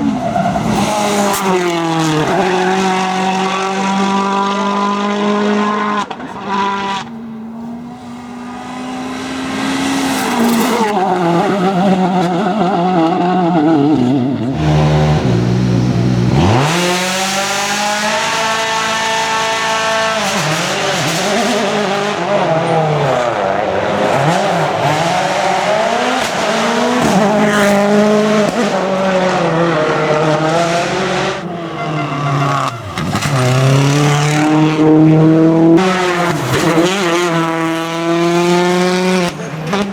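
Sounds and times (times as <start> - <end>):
turbocharged engine revving: 0.0 - 39.9.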